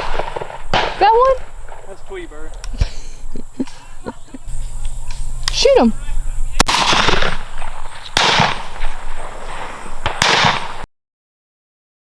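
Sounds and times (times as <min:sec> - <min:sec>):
shotgun shots with echo: 0:00.0 - 0:02.4, 0:06.6 - 0:10.9.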